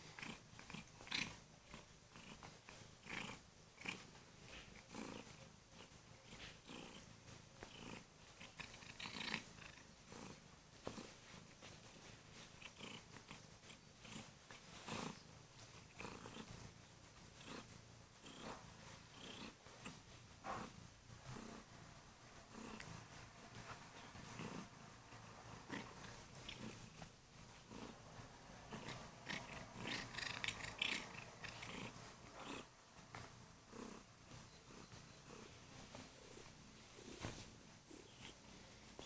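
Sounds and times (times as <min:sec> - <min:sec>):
cat purring: 0:00.0 - 0:39.0
soft clicks and rustles: 0:34.2 - 0:39.0.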